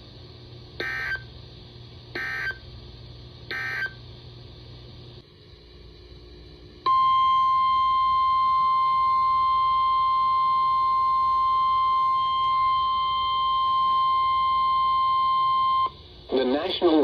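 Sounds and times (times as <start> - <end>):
loud steady alert tone: 0.8 - 1.3, 2.2 - 2.6, 3.5 - 4.0.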